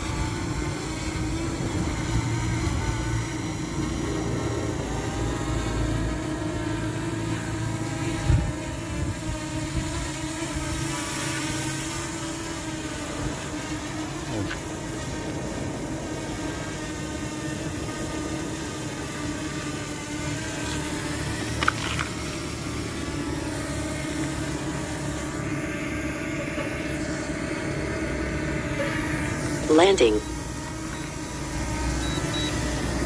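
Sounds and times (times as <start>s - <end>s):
drone propellers buzzing: 0.0s - 33.0s
wind noise: 8.1s - 10.0s.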